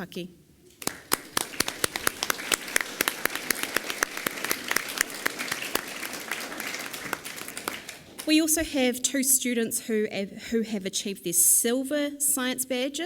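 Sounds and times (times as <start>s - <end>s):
audience applause: 0.8s - 8.4s.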